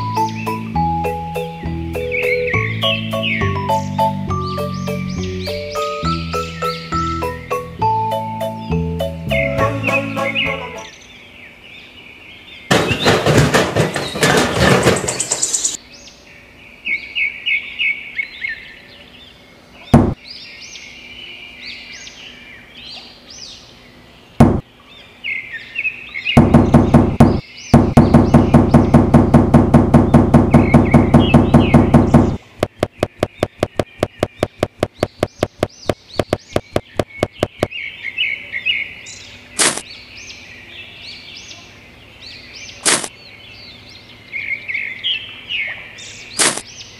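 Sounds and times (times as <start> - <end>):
birds chirping: 0.0 - 46.9
sharp knocks: 12.7 - 15.4, 19.9 - 20.2, 24.4 - 24.6, 26.4 - 37.7
fast mechanical strokes: 26.4 - 37.7.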